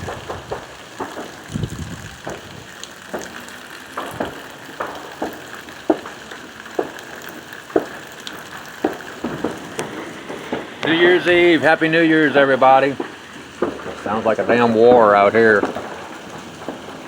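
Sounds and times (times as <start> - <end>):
gunfire: 0.0 - 1.4, 6.8 - 17.0
distant fireworks bangs and pops: 0.0 - 17.0
steady falling rain: 0.0 - 17.0
low rumbling boom: 9.0 - 16.0.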